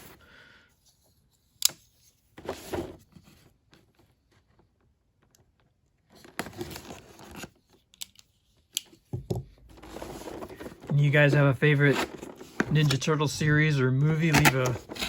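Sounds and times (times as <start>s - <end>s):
cardboard box rustling and scraping: 2.3s - 3.5s, 9.6s - 15.0s.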